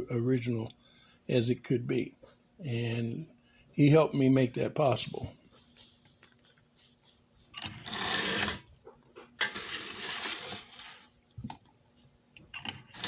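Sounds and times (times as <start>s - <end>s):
toy train motor whirring: 7.6s - 8.7s, 9.4s - 11.0s.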